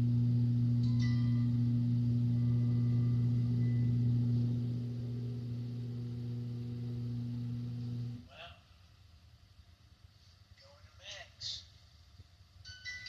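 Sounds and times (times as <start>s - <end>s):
low electrical hum: 0.0s - 13.0s
faint high ringing tones: 0.8s - 4.5s, 12.6s - 13.0s.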